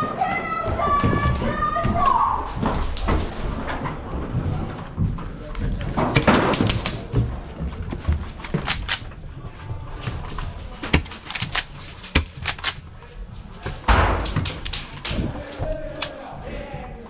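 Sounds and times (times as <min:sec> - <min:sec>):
airsoft guns firing: 0:06.2 - 0:07.1, 0:08.5 - 0:09.1, 0:10.9 - 0:12.8.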